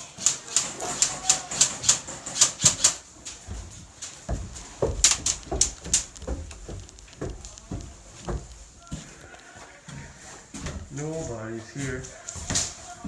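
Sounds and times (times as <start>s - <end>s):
airsoft guns firing: 0.0s - 3.1s, 4.8s - 8.0s
low thuds: 3.0s - 9.3s.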